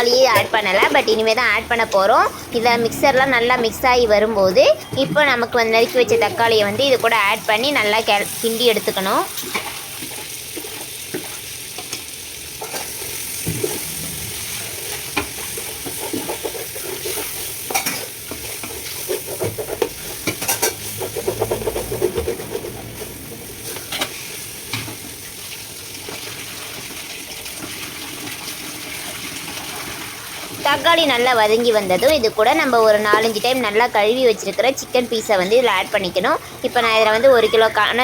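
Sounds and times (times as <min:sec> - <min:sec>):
tomatoes sizzling in a pot: 0:00.0 - 0:38.0
spoon stirring and scraping a pot: 0:04.7 - 0:25.2, 0:31.6 - 0:38.0.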